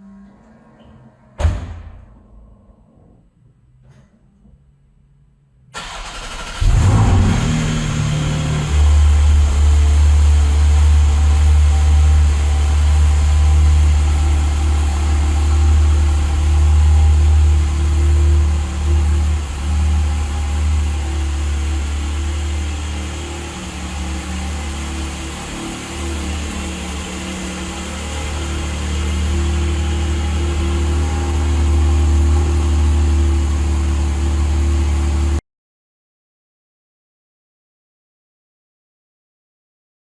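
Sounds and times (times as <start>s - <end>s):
car engine starting and idling: 5.7s - 35.4s.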